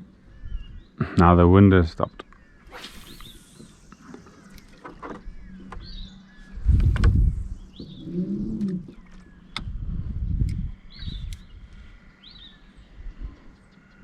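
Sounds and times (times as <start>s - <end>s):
birds chirping: 0.0s - 14.0s
low rumbling thumps: 5.0s - 11.4s
low growl-like sound: 7.8s - 9.0s.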